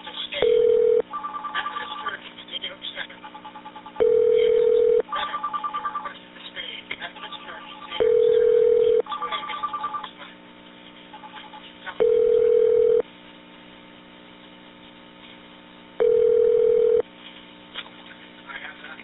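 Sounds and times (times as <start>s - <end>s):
steady low telephone tone: 0.4s - 2.2s, 3.8s - 6.2s, 7.4s - 10.1s, 12.0s - 13.1s, 16.0s - 17.1s.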